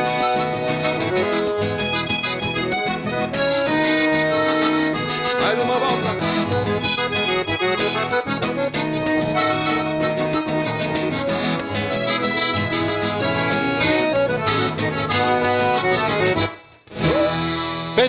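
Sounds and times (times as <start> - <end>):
accordion playing: 0.0 - 18.0
rhythmic accompaniment: 0.0 - 18.0.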